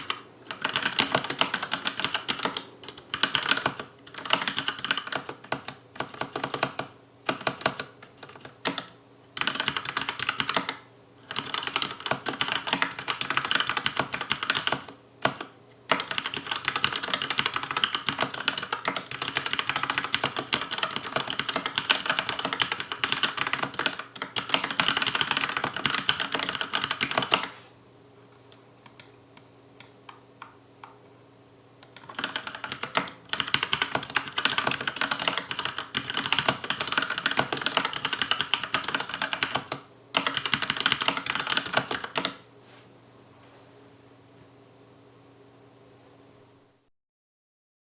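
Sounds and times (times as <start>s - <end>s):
fast typing on mechanical keyboard: 0.0s - 27.5s, 32.0s - 42.4s.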